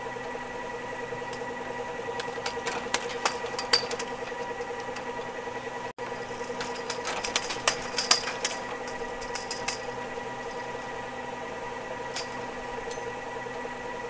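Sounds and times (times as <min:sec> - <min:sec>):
ski lift motor hum: 0:00.0 - 0:14.0
sharp rattling clicks: 0:01.3 - 0:05.3, 0:06.4 - 0:10.6.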